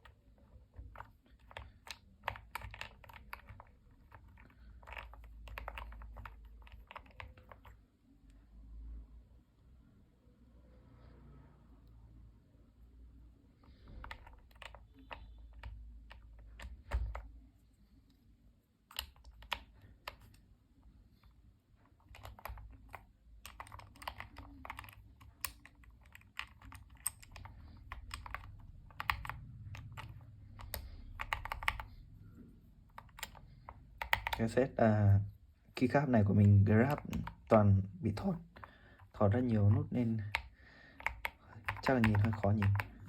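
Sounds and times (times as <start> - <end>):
mechanical keyboard typing: 0.0 - 7.8, 13.6 - 17.3, 18.9 - 20.4, 21.8 - 32.0, 32.9 - 43.0.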